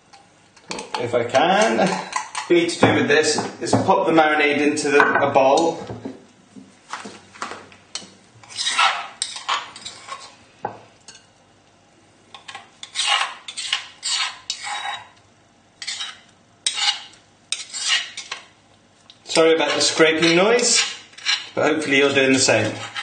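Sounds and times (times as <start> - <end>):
utensil scraping a mortar: 8.4 - 10.4, 12.5 - 15.2, 15.8 - 18.4, 19.3 - 23.0.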